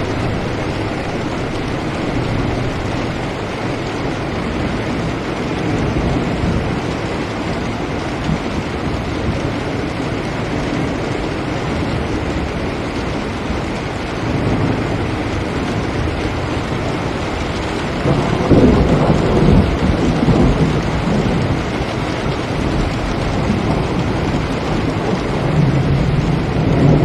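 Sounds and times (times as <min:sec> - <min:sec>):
low rumble: 0:00.0 - 0:06.5
rain on a window: 0:00.0 - 0:27.0.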